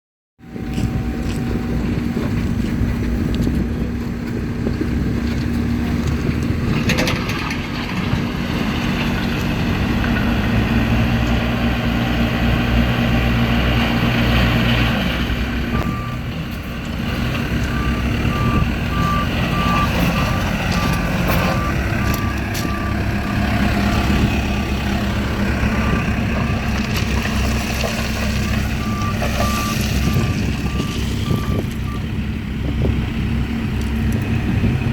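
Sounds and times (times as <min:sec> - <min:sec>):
diesel engine running: 0:00.4 - 0:34.9
reversing alarm beeping: 0:17.7 - 0:23.4, 0:28.8 - 0:32.0.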